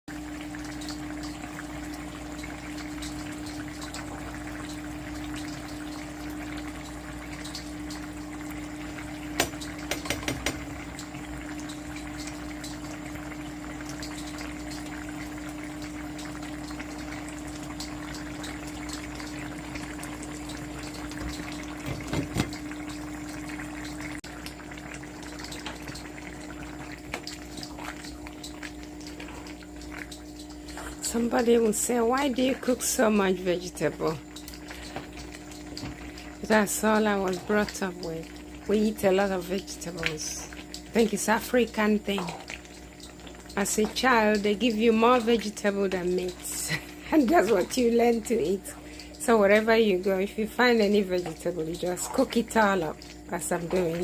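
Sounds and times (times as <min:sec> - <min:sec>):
pot simmering: 0:00.1 - 0:54.0
constant low hum: 0:00.2 - 0:54.0.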